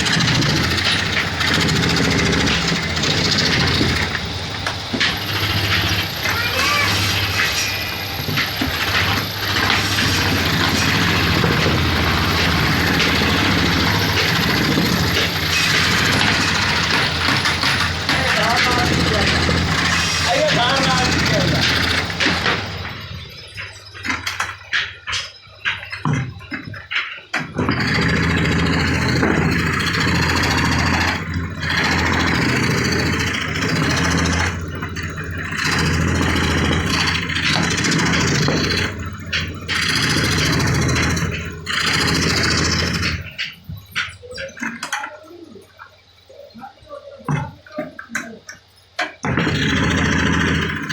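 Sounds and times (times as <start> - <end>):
power tool cutting wood: 0.0 - 23.1, 27.6 - 43.5, 49.2 - 50.9
motor humming: 0.0 - 45.6, 49.1 - 50.9.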